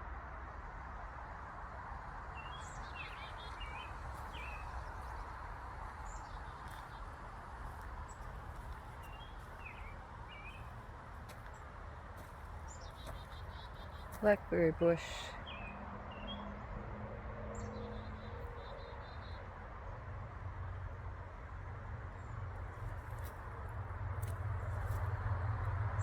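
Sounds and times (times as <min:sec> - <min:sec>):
songbirds chirping: 0:02.2 - 0:20.1.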